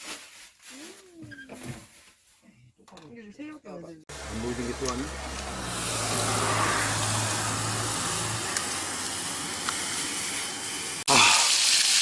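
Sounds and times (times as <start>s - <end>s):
food sizzling in hot oil: 5.1s - 12.0s.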